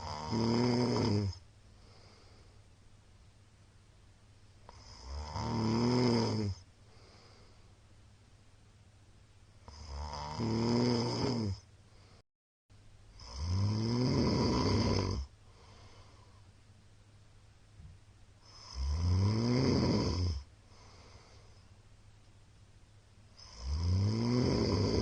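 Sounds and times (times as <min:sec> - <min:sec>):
man snoring: 0:00.0 - 0:01.4, 0:04.7 - 0:06.6, 0:09.6 - 0:11.6, 0:13.2 - 0:15.8, 0:18.4 - 0:21.2, 0:23.4 - 0:25.0
quiet breathing: 0:00.0 - 0:03.0, 0:04.6 - 0:08.0, 0:11.0 - 0:12.2, 0:14.3 - 0:16.7, 0:18.4 - 0:19.0, 0:19.8 - 0:21.9.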